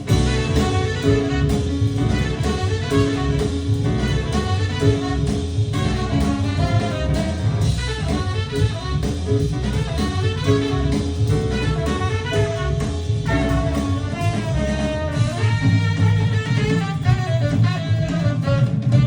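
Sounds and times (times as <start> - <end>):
music with drums and bass: 0.0 - 19.0.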